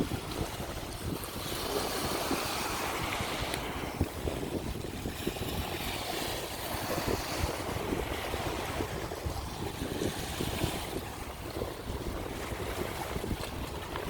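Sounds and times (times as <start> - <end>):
waves washing onto beach: 0.0 - 14.0
wind buffeting microphone: 0.0 - 14.0.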